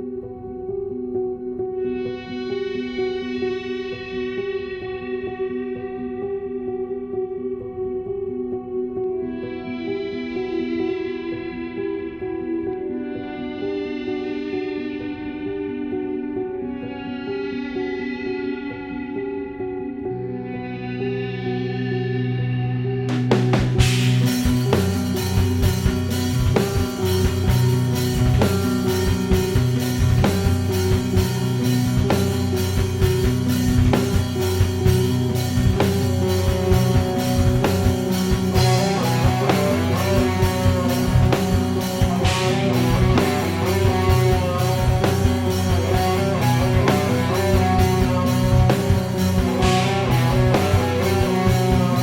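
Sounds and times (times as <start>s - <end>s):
lead guitar line: 1.0s - 52.0s
distorted rhythm guitars and bass: 23.1s - 52.0s
drum kit beat: 23.1s - 52.0s.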